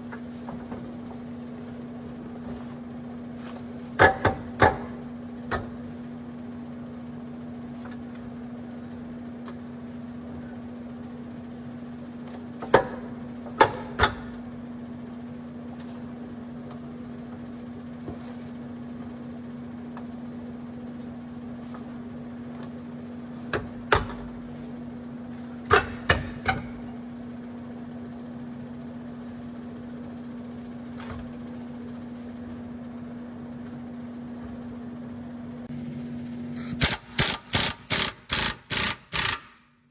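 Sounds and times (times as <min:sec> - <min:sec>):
steady low hum: 0:26.6 - 0:39.9.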